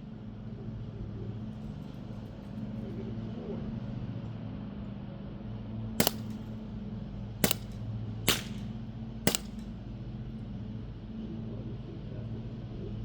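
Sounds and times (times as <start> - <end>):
steady low hum: 6.0 - 6.5, 7.4 - 9.7
bb gun shots: 6.0 - 6.6, 7.4 - 9.7.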